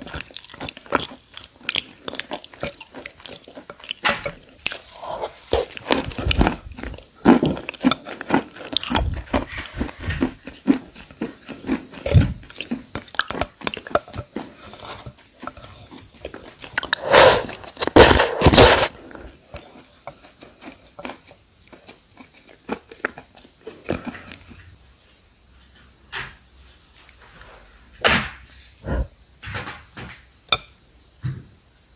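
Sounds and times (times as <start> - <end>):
clay chunks crunched and chewed: 0.0 - 24.6.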